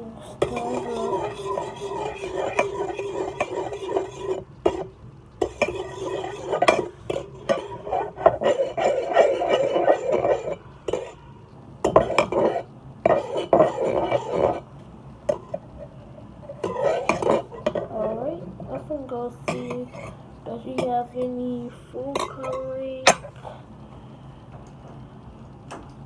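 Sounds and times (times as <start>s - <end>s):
utensil stirring slime: 0.0s - 23.4s
utensil clinking bowl: 0.4s - 11.2s, 11.8s - 14.7s, 16.6s - 18.2s.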